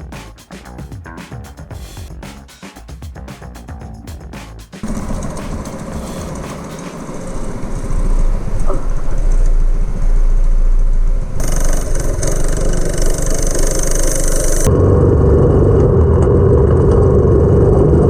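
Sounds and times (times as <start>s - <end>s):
go-kart engine running: 4.8s - 8.9s, 11.4s - 18.0s.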